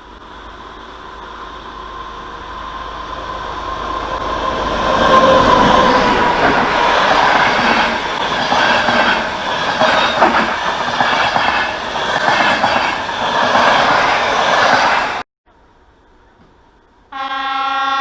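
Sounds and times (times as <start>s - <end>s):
train wheels clicking over rail joints: 4.1s - 15.2s.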